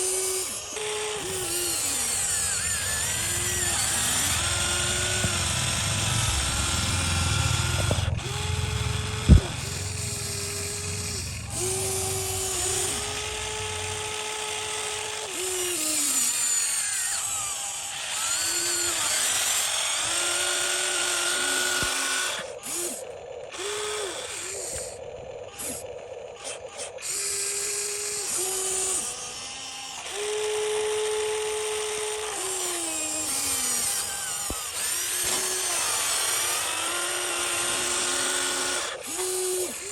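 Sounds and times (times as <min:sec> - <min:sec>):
small electric motors whining: 0:00.0 - 0:39.9
low rumble: 0:03.1 - 0:15.0.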